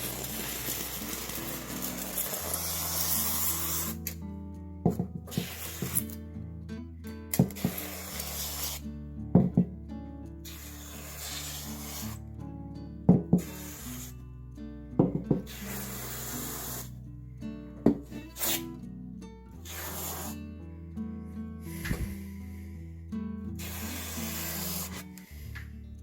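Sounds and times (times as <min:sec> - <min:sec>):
spray foam hissing from can: 0:00.0 - 0:04.0, 0:05.3 - 0:06.1, 0:07.5 - 0:08.8, 0:10.5 - 0:12.2, 0:13.4 - 0:14.1, 0:15.5 - 0:16.9, 0:19.6 - 0:20.4, 0:23.6 - 0:25.1
background music: 0:00.0 - 0:26.0.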